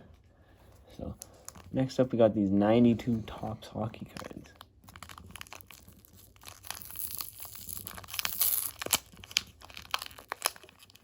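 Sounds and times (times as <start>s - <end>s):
paper wrapper tearing and crinkling: 4.0s - 11.0s.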